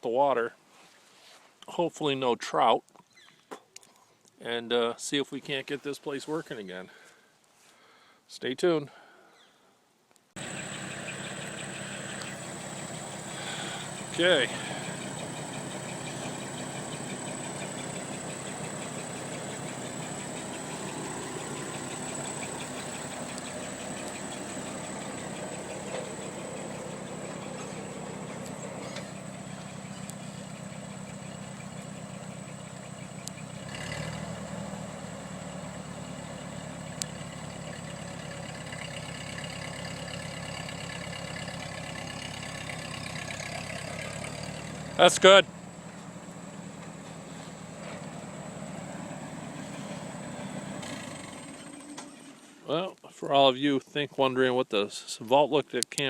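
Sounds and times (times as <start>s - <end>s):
tractor engine idling: 10.4s - 52.6s
faint clicks: 12.1s - 12.4s, 22.4s - 24.3s, 32.8s - 33.4s.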